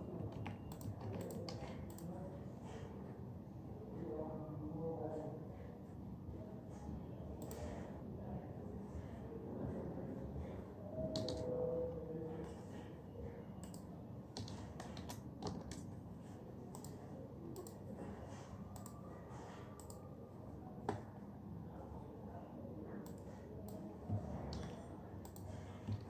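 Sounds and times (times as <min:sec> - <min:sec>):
computer keyboard typing: 0:00.1 - 0:02.1, 0:11.1 - 0:11.5, 0:13.6 - 0:16.0, 0:18.7 - 0:19.0, 0:19.8 - 0:20.0, 0:24.4 - 0:26.0.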